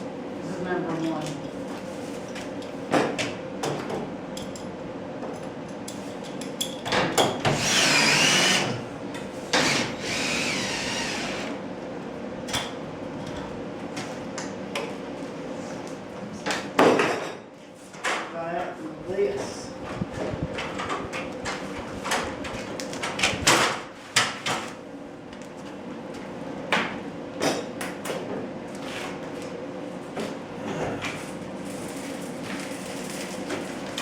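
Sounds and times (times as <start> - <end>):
power drill whining: 7.5 - 8.8, 9.6 - 11.6.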